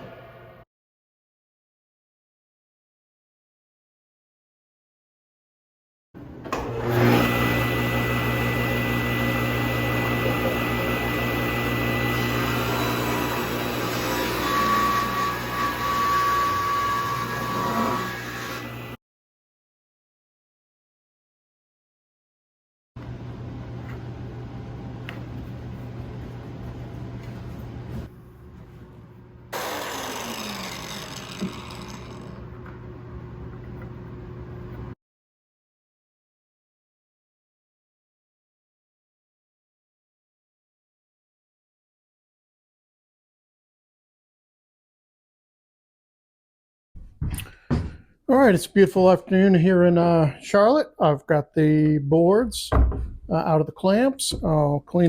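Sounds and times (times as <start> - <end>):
woodworking machine humming: 6.2 - 19.0, 29.6 - 35.0
machinery low hum: 23.0 - 29.5.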